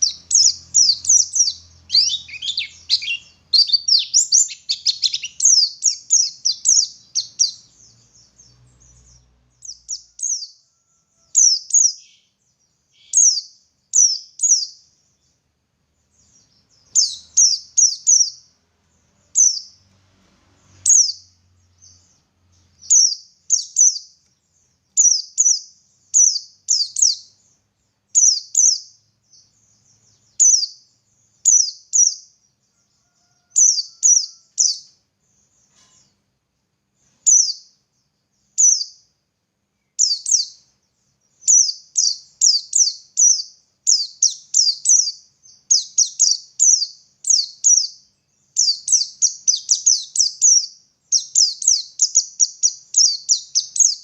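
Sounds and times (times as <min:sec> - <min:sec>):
bird singing high notes: 0:00.0 - 0:07.7.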